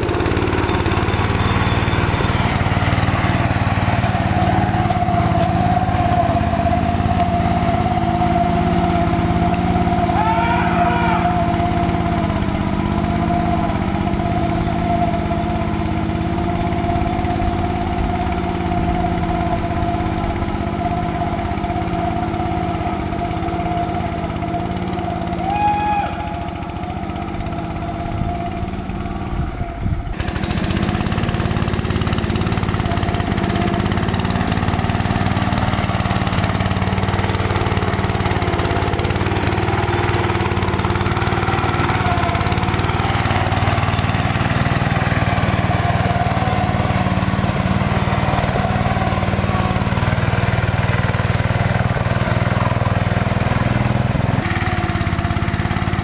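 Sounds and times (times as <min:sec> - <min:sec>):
riding lawn mower engine: 0:00.0 - 0:56.0.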